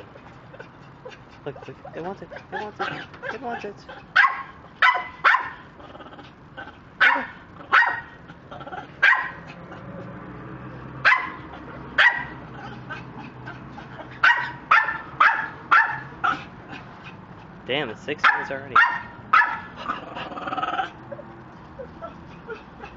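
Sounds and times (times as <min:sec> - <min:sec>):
dog barking: 0:02.6 - 0:05.6, 0:07.0 - 0:08.2, 0:09.0 - 0:09.5, 0:11.0 - 0:12.4, 0:14.2 - 0:16.5, 0:18.2 - 0:19.9.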